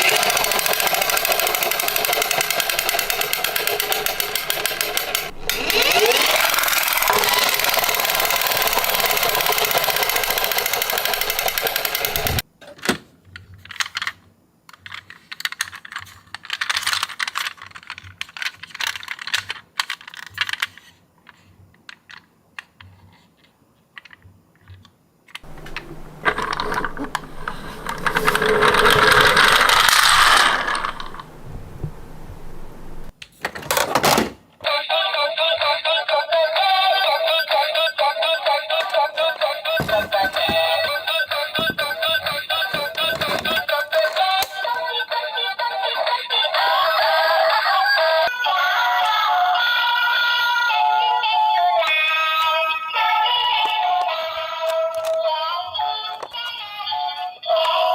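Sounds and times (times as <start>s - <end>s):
toy cars clattering and clicking: 0.0s - 34.4s, 38.7s - 44.8s, 53.2s - 56.7s.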